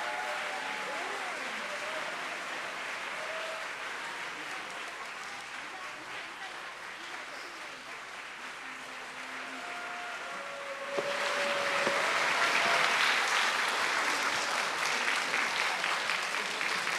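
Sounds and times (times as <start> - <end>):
audience applauding: 0.0 - 16.9.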